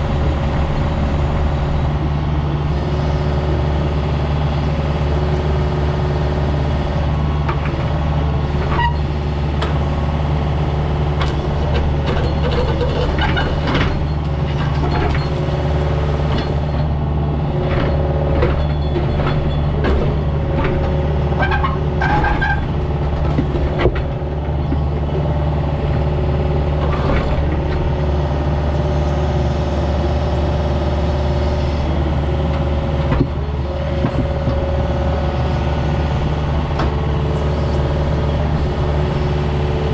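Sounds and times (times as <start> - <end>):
earthmoving machine engine running: 0.0 - 39.9
machine squeals: 8.7 - 9.1.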